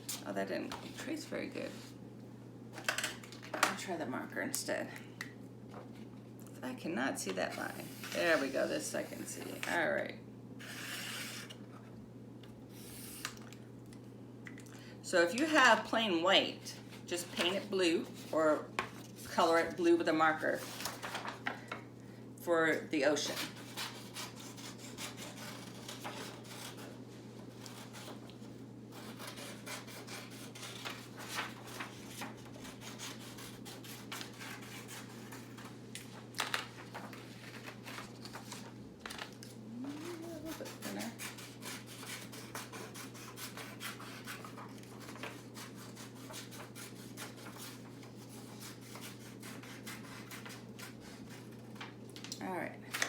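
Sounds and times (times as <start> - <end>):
steady low hum: 0.0 - 43.3
paper scratching and rubbing: 39.9 - 51.5.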